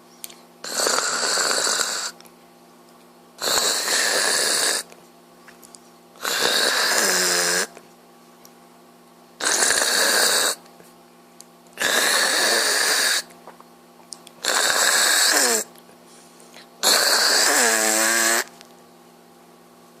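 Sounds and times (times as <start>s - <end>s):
man snoring: 0.6s - 2.2s, 3.4s - 4.9s, 6.2s - 7.7s, 9.4s - 10.6s, 11.8s - 13.3s, 14.4s - 15.7s, 16.8s - 18.5s.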